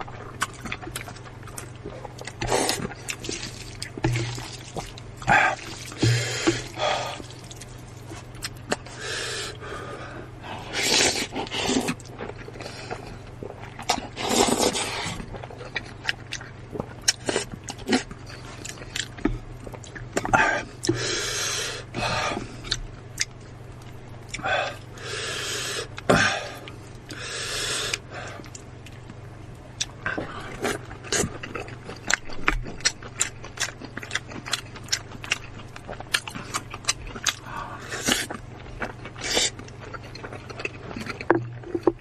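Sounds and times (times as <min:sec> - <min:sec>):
wet chewing clicks: 0:00.1 - 0:08.9, 0:30.6 - 0:42.0
slurping noodles: 0:10.6 - 0:12.1, 0:14.1 - 0:15.2.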